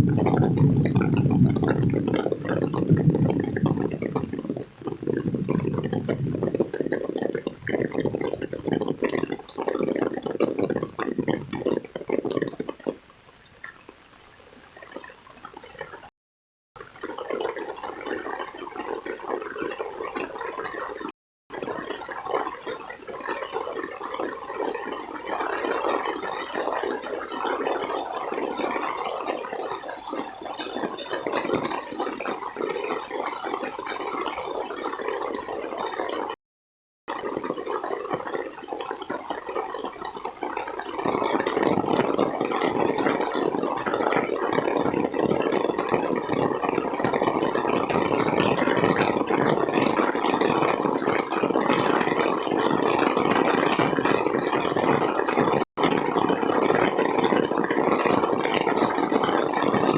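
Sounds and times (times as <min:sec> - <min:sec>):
water rushing: 0:00.0 - 0:12.8
heavy rain pouring: 0:00.0 - 0:13.0, 0:21.6 - 0:36.4, 0:37.1 - 0:59.9.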